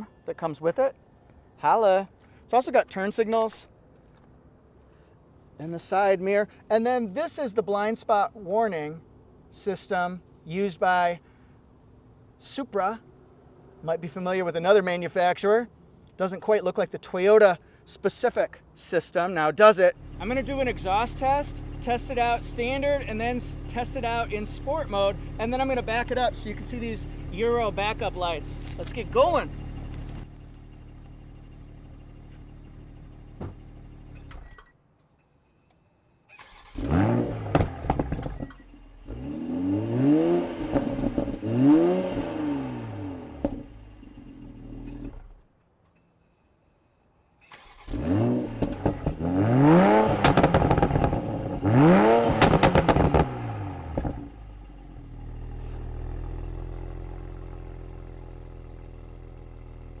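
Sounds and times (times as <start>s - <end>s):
car engine idling and revving: 19.9s - 34.7s, 36.4s - 45.5s, 47.6s - 60.0s
exhaust crackles and pops: 20.2s - 32.5s, 36.8s - 38.6s, 40.7s - 41.5s, 48.5s - 54.4s.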